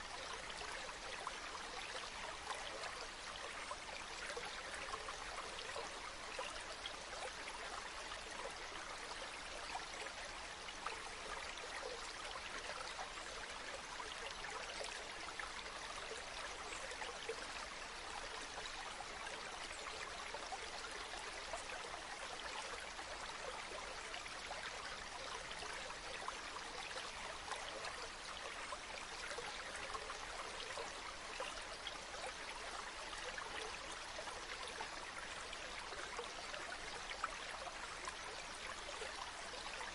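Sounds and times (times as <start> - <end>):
water flowing steadily: 0.0 - 39.9.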